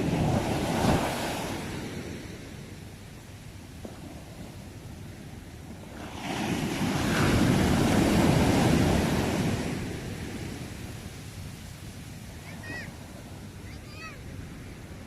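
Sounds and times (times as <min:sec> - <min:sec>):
sea wave breaking: 0:00.0 - 0:02.8, 0:05.7 - 0:10.9, 0:11.9 - 0:15.0
low surf hiss: 0:00.0 - 0:15.0.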